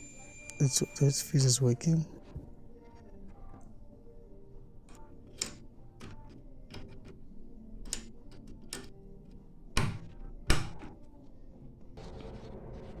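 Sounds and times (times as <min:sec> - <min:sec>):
small tools clicking and tapping: 0:07.8 - 0:09.0.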